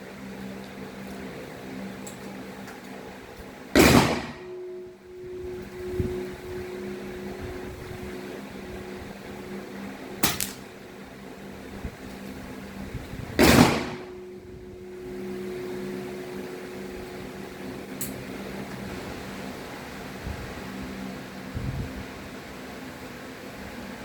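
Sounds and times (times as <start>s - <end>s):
steady low hum: 0.0s - 24.0s
air rifle shot: 3.8s - 4.6s, 10.2s - 10.6s, 13.4s - 14.2s
air rifle click: 10.2s - 10.6s.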